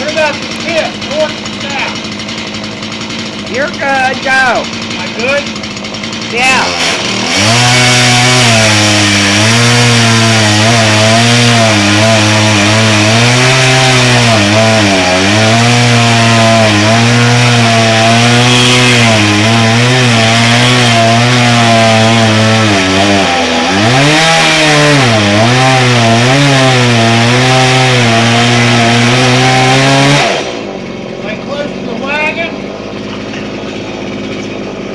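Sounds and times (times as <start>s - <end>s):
chainsaw cutting wood: 0.0s - 34.9s.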